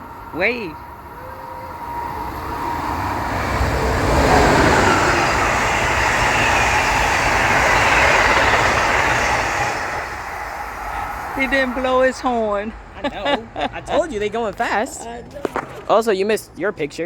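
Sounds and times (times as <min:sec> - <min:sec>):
train passing at speed: 0:00.0 - 0:16.8.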